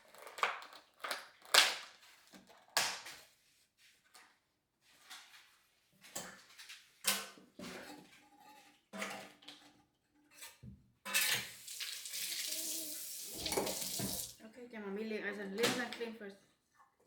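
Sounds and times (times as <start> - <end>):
dishes and cutlery clinking: 6.2 - 11.7, 13.4 - 14.4
tap water running: 11.1 - 14.4.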